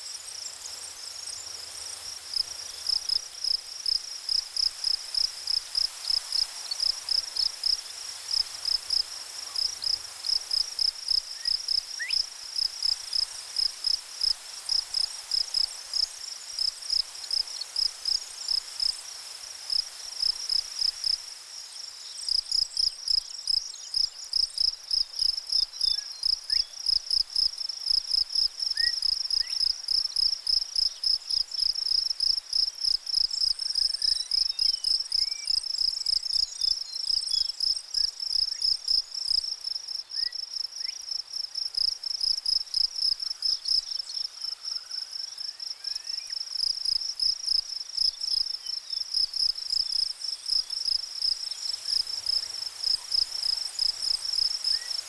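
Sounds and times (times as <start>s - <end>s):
insect call pulsing rapidly: 41.8s - 55.0s.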